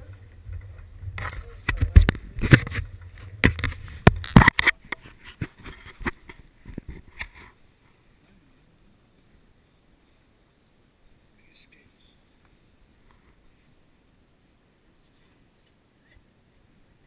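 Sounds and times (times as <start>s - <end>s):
low rumble: 0.0s - 4.4s
sharp knocks bangs and scrapes: 0.0s - 7.6s.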